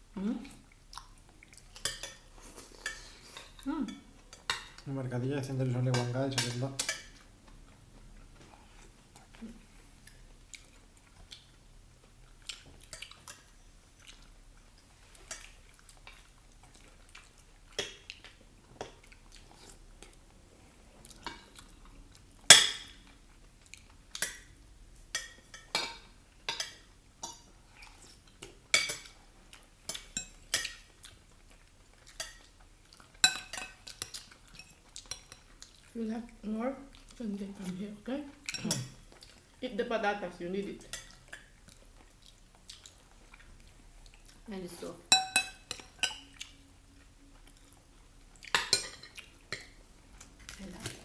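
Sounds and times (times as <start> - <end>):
cutlery clinking on plates: 1.8 - 4.8, 22.5 - 23.0, 25.2 - 27.5, 28.7 - 29.2, 33.2 - 35.5, 38.5 - 39.1, 45.1 - 46.5, 48.5 - 51.0.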